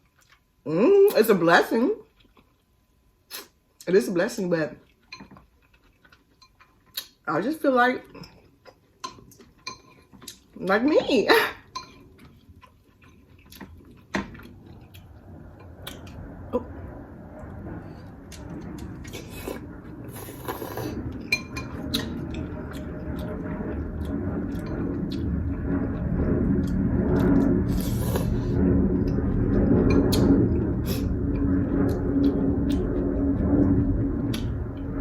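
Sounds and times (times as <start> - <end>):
low steady hum: 0.0 - 35.0
chewing and mouth clicks: 2.1 - 3.5, 4.8 - 7.2, 11.9 - 15.1.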